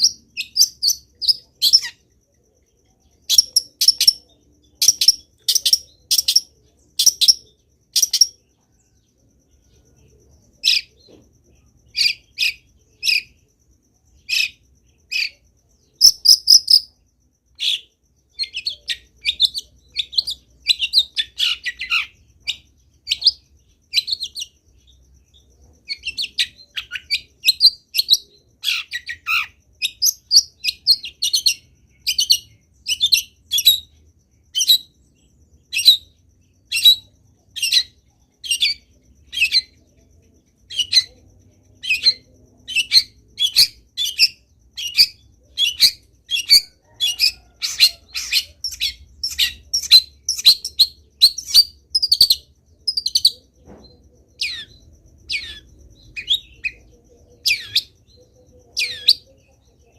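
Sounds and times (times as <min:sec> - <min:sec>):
bird singing sharp chirps: 0:40.7 - 0:59.9.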